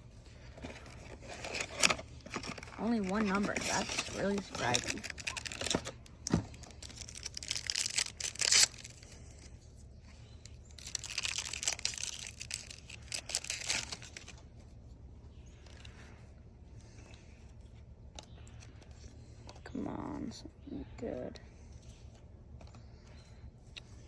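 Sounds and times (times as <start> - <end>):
wrapper crinkling: 0.4 - 9.5, 10.4 - 14.4
card pack wrapper tearing: 0.6 - 9.5, 10.5 - 14.4.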